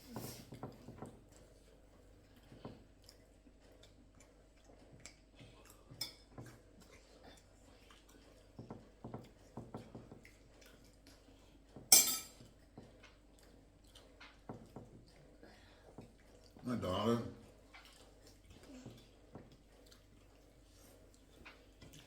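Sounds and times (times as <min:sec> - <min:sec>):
chewing: 0:00.1 - 0:11.8, 0:12.4 - 0:16.7, 0:17.4 - 0:22.0
dishes and cutlery clinking: 0:05.9 - 0:06.6, 0:11.8 - 0:12.5.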